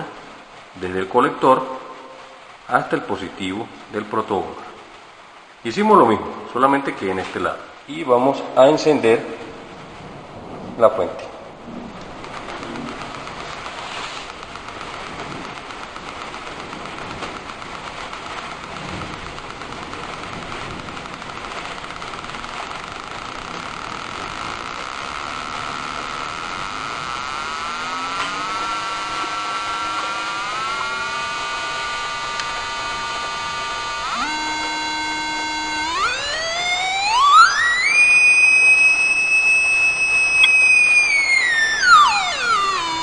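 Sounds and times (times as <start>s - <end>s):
electronic buzzing tone: 18.6s - 43.0s.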